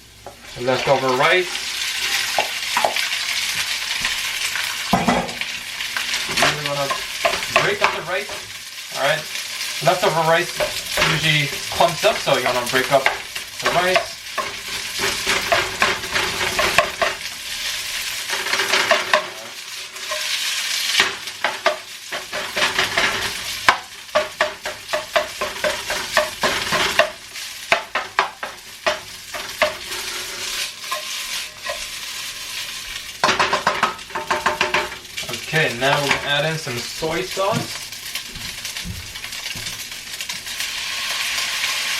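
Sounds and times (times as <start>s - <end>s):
rice sizzling in a wok: 0.0s - 41.9s
spatula scraping and tapping wok: 0.2s - 4.2s, 4.9s - 8.5s, 9.8s - 40.5s.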